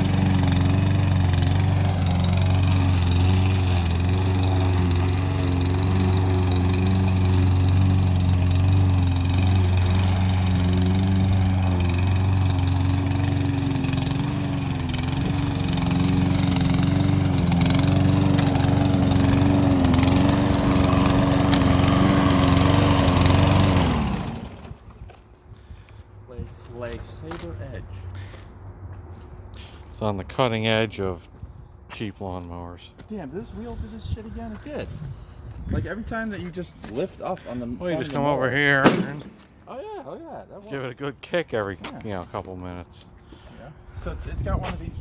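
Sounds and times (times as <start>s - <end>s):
lawnmower engine running: 0.0s - 25.0s.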